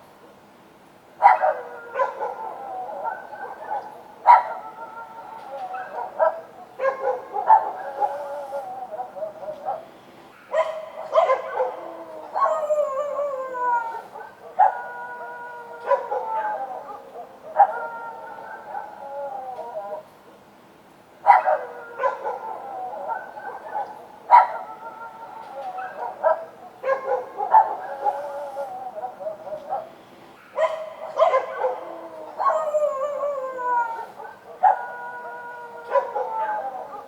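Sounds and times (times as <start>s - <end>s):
dogs barking and howling: 1.2s - 20.1s, 21.2s - 37.0s.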